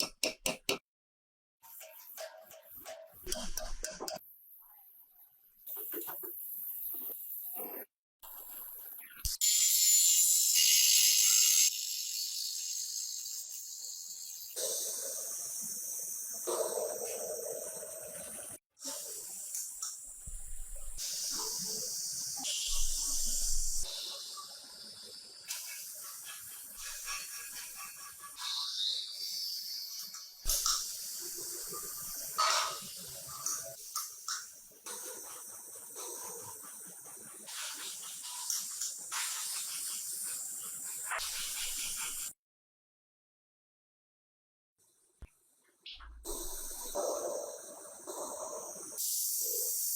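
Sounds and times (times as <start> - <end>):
compressed air hissing: 18.8 - 42.3.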